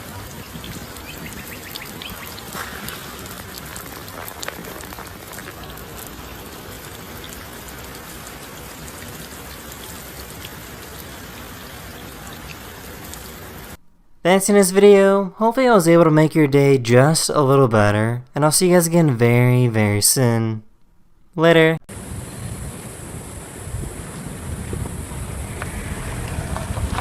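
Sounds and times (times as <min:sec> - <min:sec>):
water sprinkling: 0:00.0 - 0:13.8, 0:21.9 - 0:27.0.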